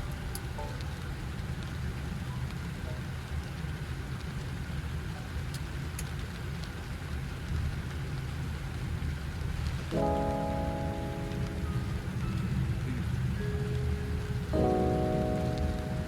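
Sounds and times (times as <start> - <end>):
aircraft cockpit rumble and hiss: 9.9 - 16.0.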